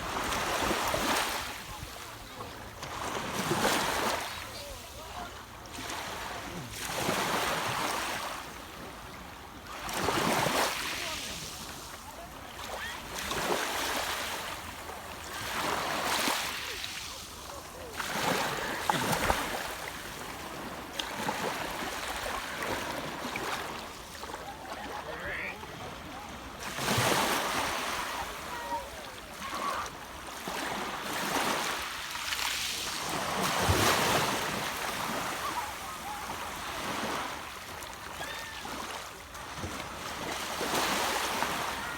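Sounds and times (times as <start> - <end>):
water washing on beach: 0.0 - 41.9
faint voices: 1.3 - 6.9, 10.6 - 20.4, 23.5 - 31.1, 35.0 - 37.3, 41.4 - 41.9.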